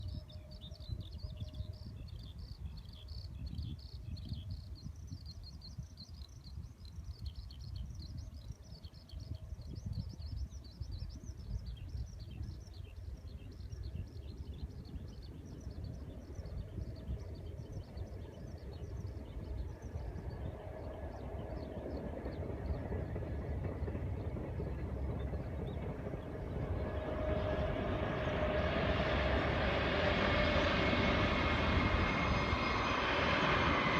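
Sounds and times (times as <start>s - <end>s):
train approaching with hum: 0.0s - 33.9s
low rumble: 18.8s - 33.9s.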